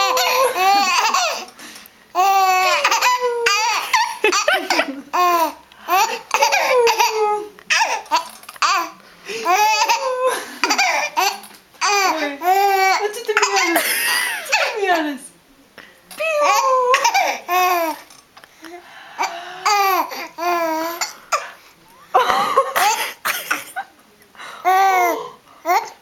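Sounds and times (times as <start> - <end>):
baby giggling: 0.0 - 1.5, 2.2 - 14.8, 16.2 - 18.0.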